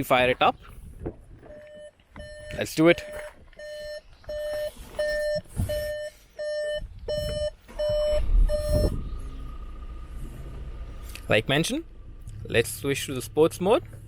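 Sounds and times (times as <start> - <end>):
diesel engine cranking and idling: 0.0 - 14.0
car warning chime beeping: 1.5 - 9.0.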